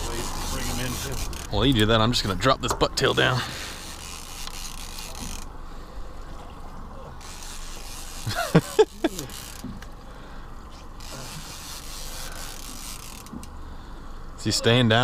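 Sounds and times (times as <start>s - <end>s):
fishing reel ticking: 0.0s - 1.7s, 3.1s - 5.5s, 7.2s - 9.9s, 10.9s - 13.6s
boat hum: 0.0s - 15.0s.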